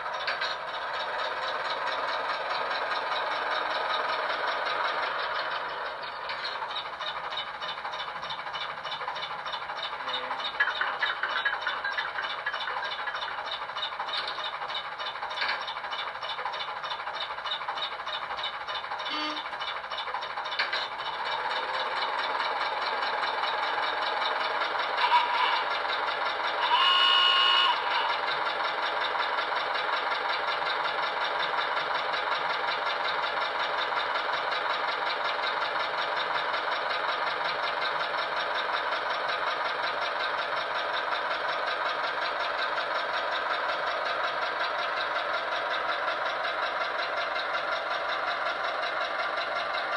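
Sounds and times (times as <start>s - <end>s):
model locomotive engine rattling: 0.0s - 49.9s.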